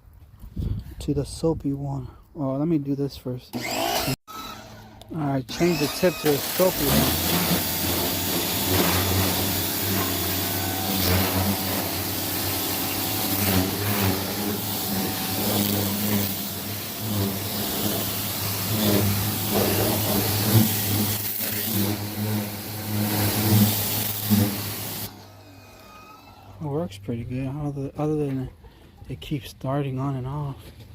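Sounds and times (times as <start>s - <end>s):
pressure washer motor hum: 3.5s - 26.7s
water spray hissing: 5.5s - 25.1s.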